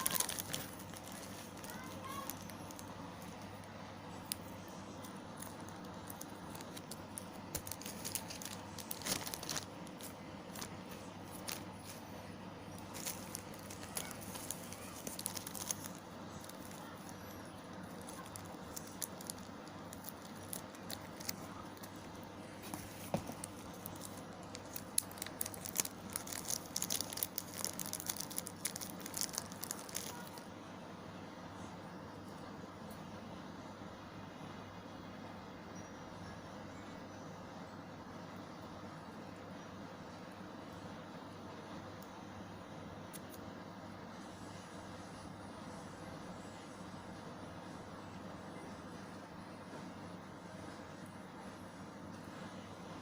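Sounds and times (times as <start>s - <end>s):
plastic packaging crinkling: 0.0s - 30.4s
faint steady hum: 0.0s - 53.0s.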